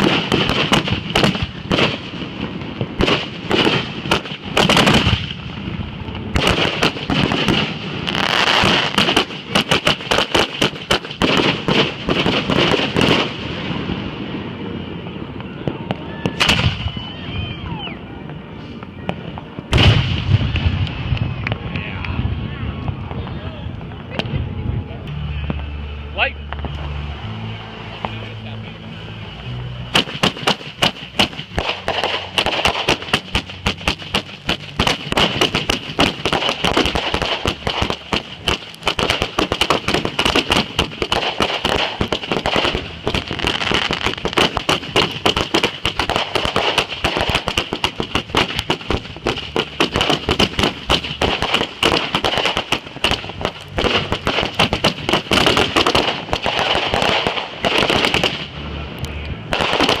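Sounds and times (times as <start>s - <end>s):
firecrackers banging rapidly: 0.0s - 14.9s, 15.7s - 17.0s, 29.8s - 60.0s.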